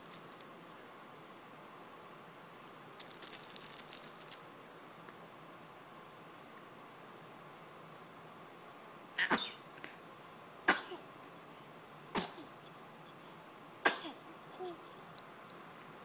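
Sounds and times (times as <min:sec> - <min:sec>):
baby sneezing: 0:09.2 - 0:09.6
faint baby sound: 0:14.5 - 0:14.9.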